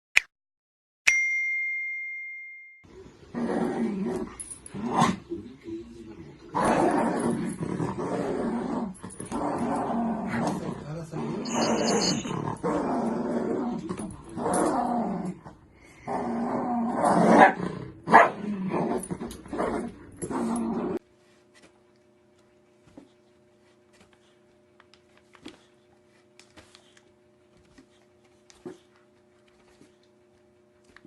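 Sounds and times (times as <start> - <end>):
dog growling: 3.3 - 21.0.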